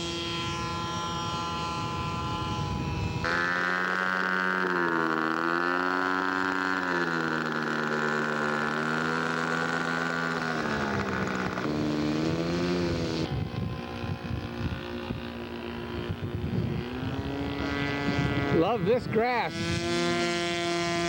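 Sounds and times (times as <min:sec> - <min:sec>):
model airplane engine buzzing: 0:00.0 - 0:21.0.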